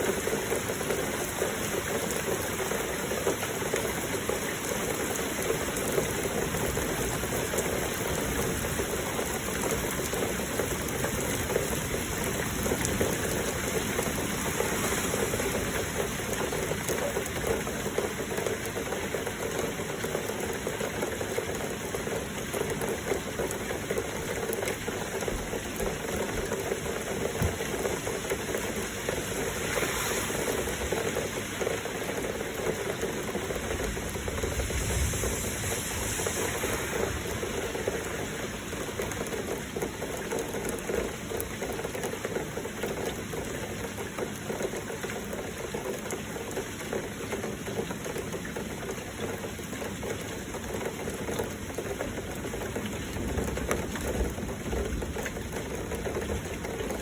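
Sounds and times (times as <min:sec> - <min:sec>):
flowing water: 0:00.0 - 0:57.0
heavy rain: 0:00.0 - 0:57.0.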